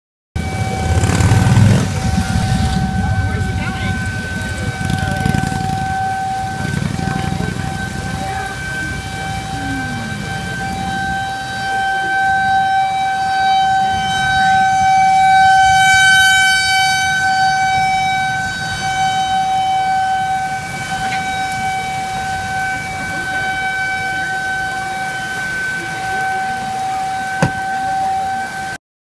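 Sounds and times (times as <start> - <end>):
warning siren steady tone: 0.4 - 28.8.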